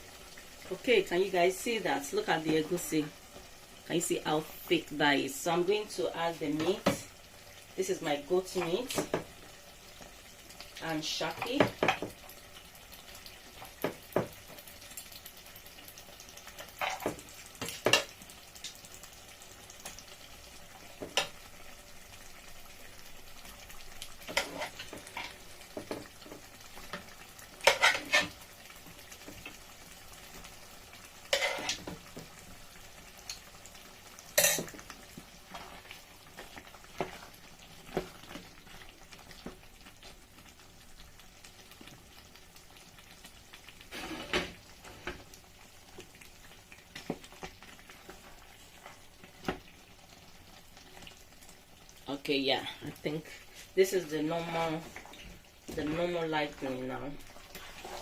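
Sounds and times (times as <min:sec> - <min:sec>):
faint sizzle: 0:00.0 - 0:58.0
spoon scraping a pot: 0:24.3 - 0:25.4, 0:27.6 - 0:28.4, 0:31.3 - 0:31.9.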